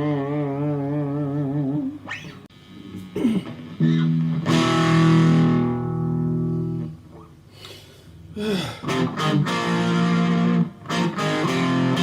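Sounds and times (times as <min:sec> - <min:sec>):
electric guitar playing: 0:03.5 - 0:07.2, 0:08.8 - 0:12.0.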